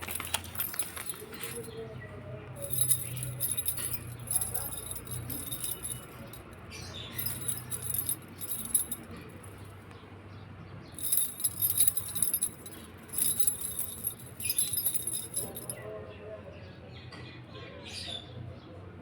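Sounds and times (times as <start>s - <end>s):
small metal bell jingling: 0.0s - 1.8s, 2.6s - 9.6s, 11.0s - 15.8s.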